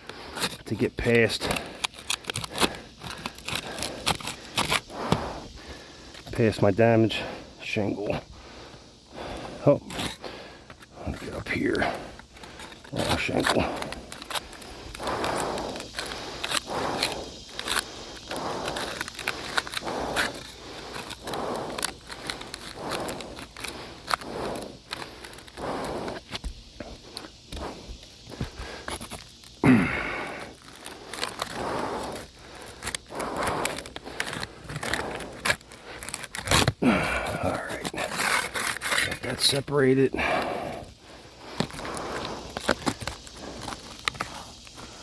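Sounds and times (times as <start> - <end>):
pry tool scraping under shingles: 0.0 - 45.0.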